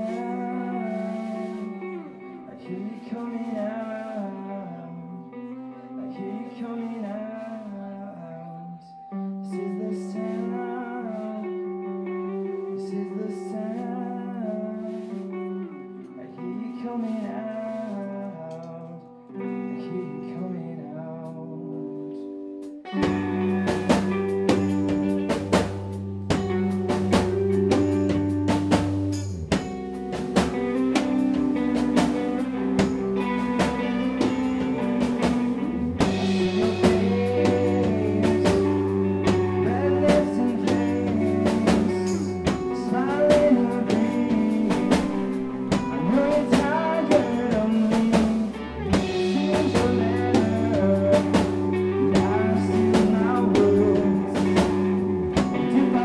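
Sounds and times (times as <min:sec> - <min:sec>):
electric guitar: 0:00.0 - 0:56.0
drum kit beat: 0:22.9 - 0:56.0
sustained low notes: 0:23.1 - 0:47.0.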